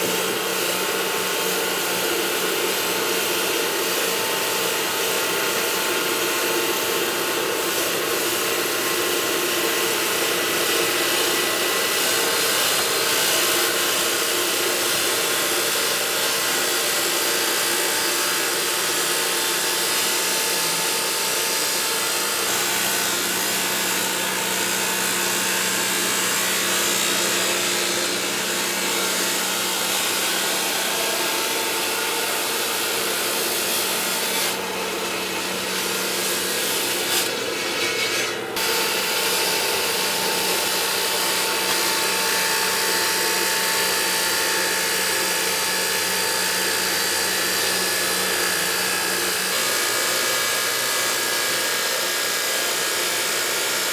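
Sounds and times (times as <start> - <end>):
constant machine hum: 0.0 - 53.9
machinery grinding: 6.1 - 53.9.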